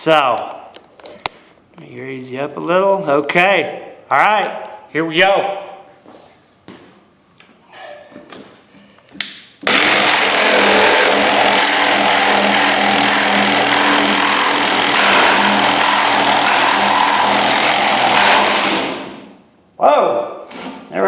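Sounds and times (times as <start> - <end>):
reciprocating saw cutting wood: 9.6 - 19.3.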